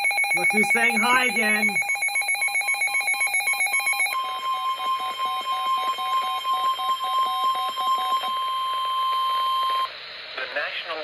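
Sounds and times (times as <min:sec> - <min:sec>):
alternating electronic beeps: 0:00.0 - 0:07.2
steady high tone with pulsing beep: 0:00.0 - 0:09.7.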